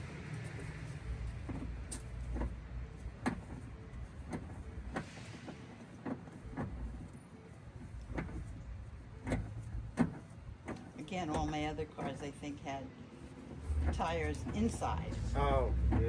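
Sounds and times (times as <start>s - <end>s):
traffic rumble: 0.0s - 16.0s.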